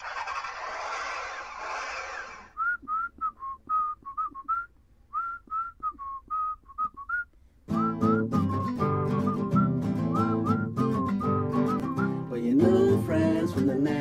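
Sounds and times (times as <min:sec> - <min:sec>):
whistled tune: 0:02.5 - 0:12.4.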